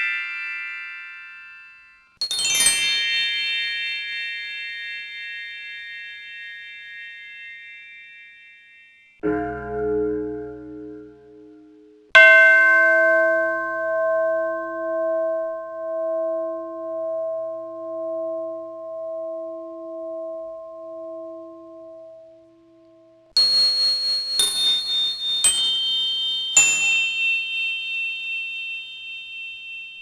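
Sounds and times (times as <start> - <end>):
bell ringing with waver: 0.0 - 13.0, 23.4 - 30.0
higher-pitched bell struck: 9.2 - 30.0.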